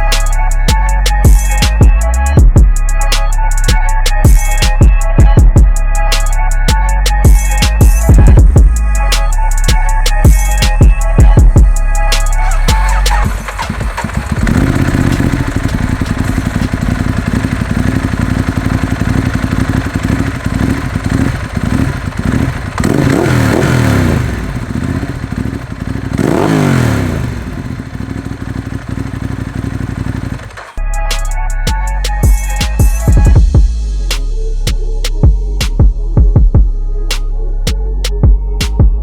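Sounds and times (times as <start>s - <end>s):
motorcycle engine revving: 7.2s - 30.8s
motorcycle engine idling: 7.3s - 30.8s.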